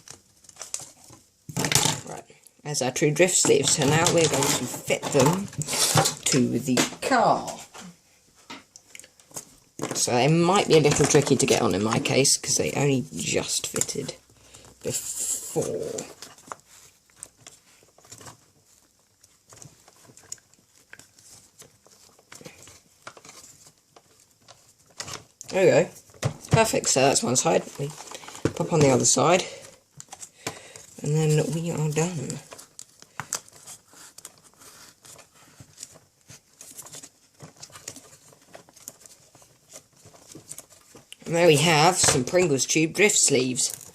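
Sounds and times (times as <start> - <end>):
cardboard sleeve clicking and scraping: 3.2 - 6.5, 14.7 - 43.9.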